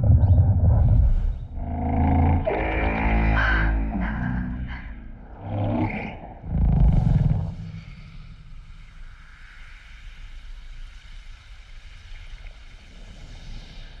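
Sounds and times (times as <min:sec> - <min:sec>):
sound-design drone: 0:00.0 - 0:06.5
airy hum with high tones: 0:00.0 - 0:10.6.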